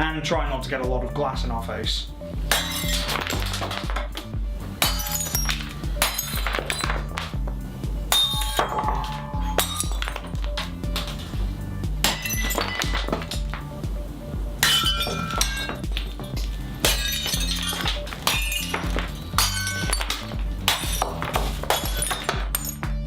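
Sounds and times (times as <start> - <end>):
background music with steady beat: 0.0 - 23.0
glass shattering under hammer: 2.5 - 4.2, 4.8 - 7.4, 8.1 - 11.4, 12.0 - 13.7, 14.6 - 23.0.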